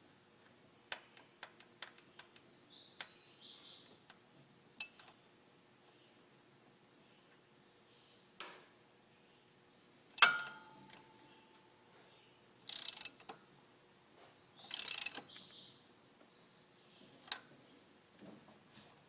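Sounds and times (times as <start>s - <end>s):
metal clink of tools: 10.2s - 11.0s
ratchet rasping: 12.7s - 13.2s, 14.7s - 15.2s.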